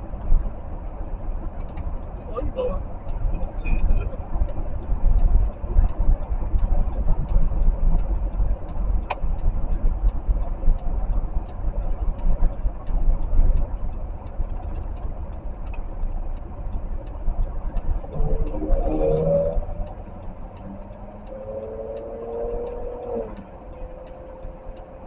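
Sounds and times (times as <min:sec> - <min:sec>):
car road and engine rumble: 0:00.0 - 0:25.0
light even ticking: 0:00.0 - 0:25.0.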